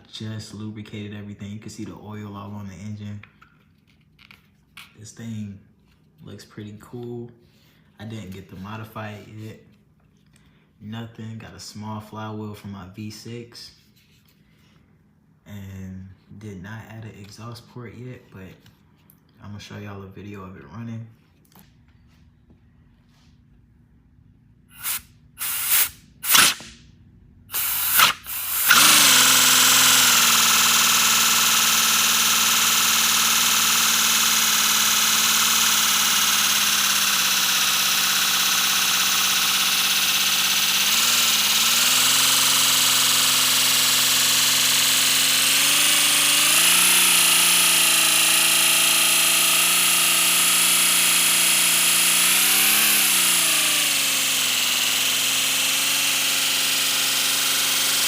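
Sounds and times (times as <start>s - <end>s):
air bursts: 24.7s - 26.7s, 27.5s - 29.0s.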